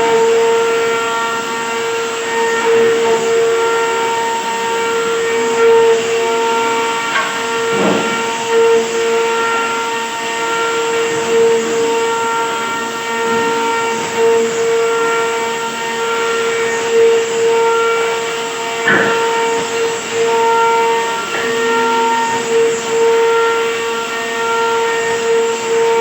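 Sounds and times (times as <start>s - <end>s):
woodworking machine whining: 0.0s - 26.0s.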